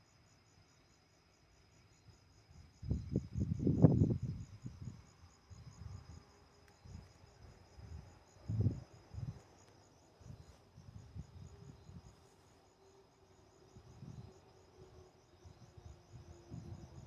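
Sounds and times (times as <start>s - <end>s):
cricket chirping: 0.0s - 17.0s
wind rumbling on microphone: 2.8s - 9.4s, 10.2s - 12.2s, 13.7s - 17.0s.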